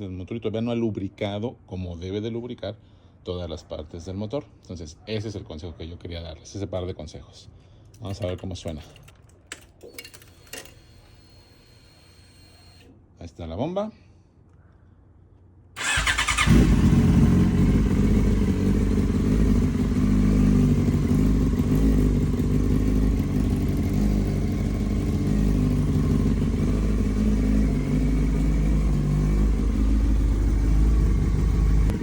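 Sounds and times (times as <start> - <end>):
motorcycle engine starting and idling: 15.8 - 32.0.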